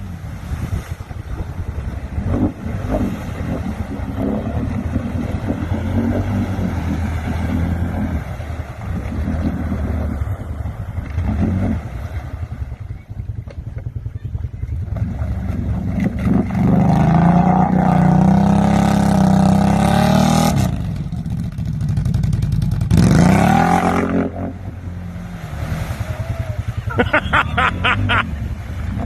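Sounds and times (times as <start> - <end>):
vehicle engine revving: 0.0 - 29.0.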